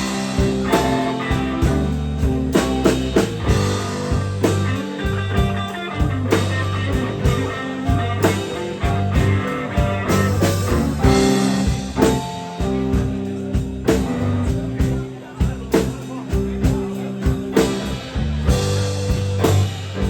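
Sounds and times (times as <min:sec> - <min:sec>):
electric guitar lead: 0:00.0 - 0:14.8
bass guitar: 0:00.0 - 0:20.0
drum kit hits: 0:00.0 - 0:20.0.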